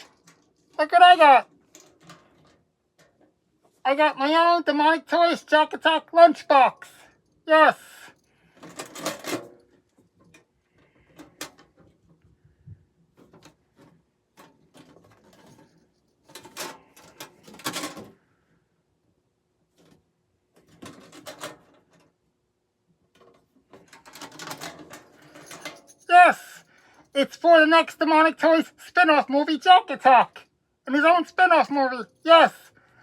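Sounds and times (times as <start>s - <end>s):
lunchbox clicks and clatter: 8.6s - 10.4s, 14.4s - 18.1s, 20.6s - 22.0s, 23.2s - 26.1s.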